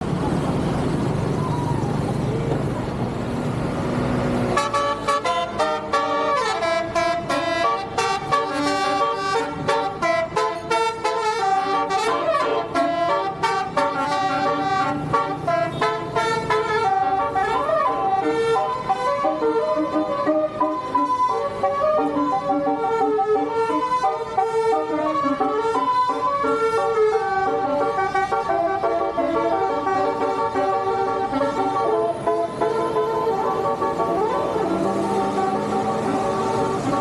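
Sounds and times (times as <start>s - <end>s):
vehicle noise: 0.0s - 37.0s
musical bus horn melody: 4.4s - 37.0s.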